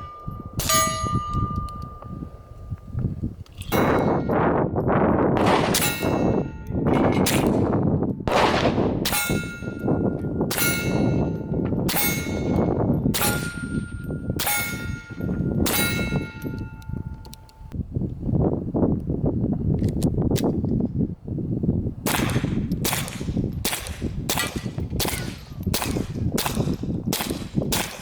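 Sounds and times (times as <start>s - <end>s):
steel target clanging: 0.0s - 2.6s, 3.6s - 17.2s
suppressed pistol shots: 5.4s - 9.9s, 22.1s - 28.0s.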